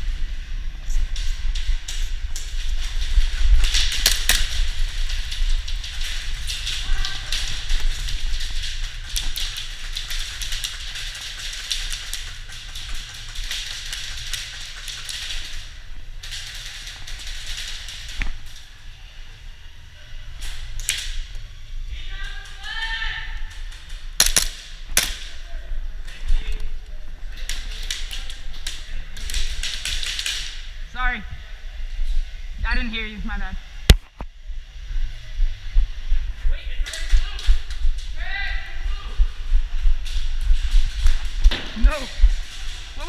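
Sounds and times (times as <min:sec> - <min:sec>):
wind rumble: 0:00.0 - 0:14.8, 0:33.6 - 0:43.0
sharp clicks and ticks: 0:01.1 - 0:18.6
airsoft gun snaps: 0:24.2 - 0:25.3.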